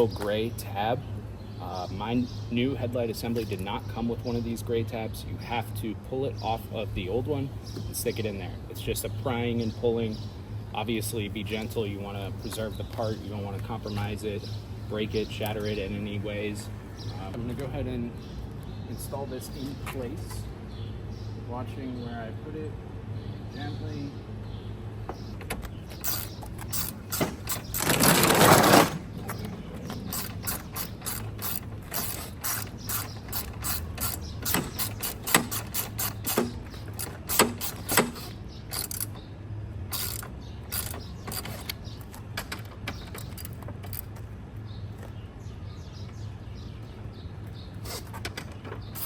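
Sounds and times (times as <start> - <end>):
loud scraping rustle: 25.8 - 39.2, 47.8 - 49.0
mechanical clicks and ratcheting: 25.9 - 29.1, 29.8 - 39.2, 39.9 - 44.1, 47.8 - 49.0.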